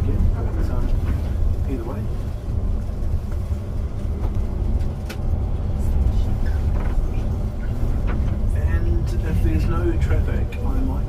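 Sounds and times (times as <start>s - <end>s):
coach engine and road noise: 0.0s - 11.0s.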